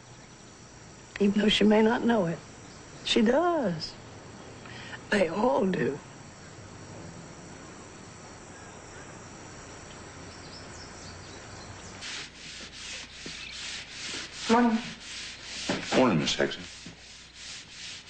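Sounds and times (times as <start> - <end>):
sandpaper rubbing on wood: 12.0 - 18.0.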